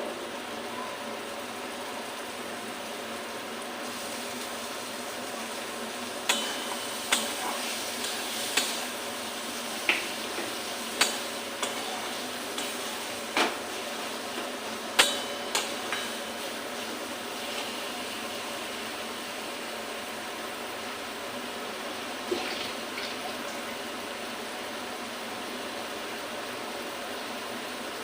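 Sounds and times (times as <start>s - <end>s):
metal spatula clinking on pan: 6.3s - 7.4s.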